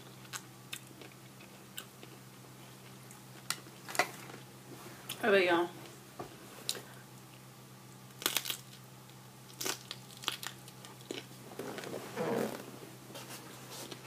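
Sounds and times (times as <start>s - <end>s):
crunchy tortilla chewing: 0.0s - 4.4s, 6.6s - 12.6s.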